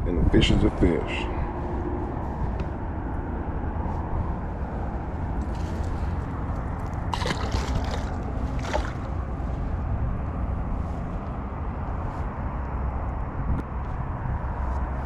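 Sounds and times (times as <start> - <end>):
steady low rumble: 0.0 - 15.0
water sloshing and splashing: 4.5 - 10.3.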